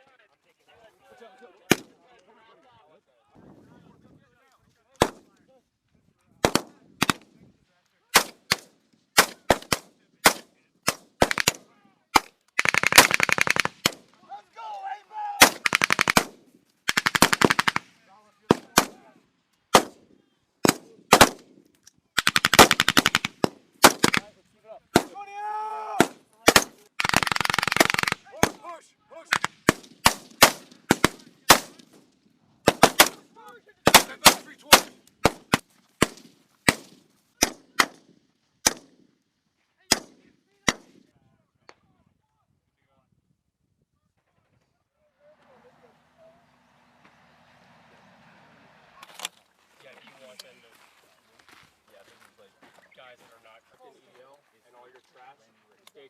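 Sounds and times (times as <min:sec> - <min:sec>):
rifle shots echoing: 0:06.4 - 0:07.3, 0:08.2 - 0:14.1, 0:15.4 - 0:19.1, 0:19.7 - 0:21.6, 0:22.2 - 0:24.3, 0:25.0 - 0:25.2, 0:26.0 - 0:32.0, 0:32.6 - 0:39.0, 0:39.9 - 0:41.0
automatic gunfire bursts: 0:08.2 - 0:11.6, 0:12.6 - 0:14.0, 0:15.4 - 0:19.0, 0:22.2 - 0:24.3, 0:26.0 - 0:28.6, 0:29.3 - 0:31.8, 0:32.7 - 0:33.2
single gunshots: 0:08.2 - 0:14.0, 0:18.5 - 0:19.1, 0:19.7 - 0:20.0, 0:20.6 - 0:21.5, 0:22.6 - 0:24.3, 0:25.0 - 0:25.2, 0:26.0 - 0:28.7, 0:29.3 - 0:31.9, 0:32.6 - 0:39.0, 0:39.9 - 0:41.0.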